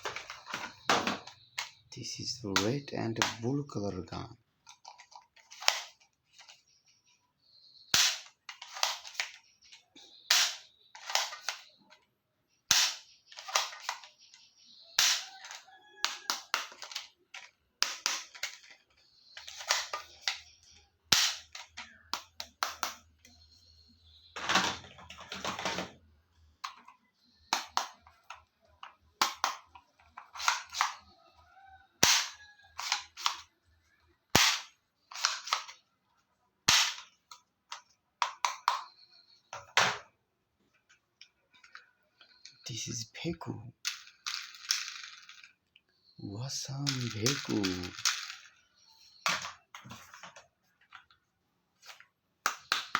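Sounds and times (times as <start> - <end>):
toy gun shots with hissy tail: 7.9 - 8.3, 12.7 - 13.0, 34.4 - 34.7.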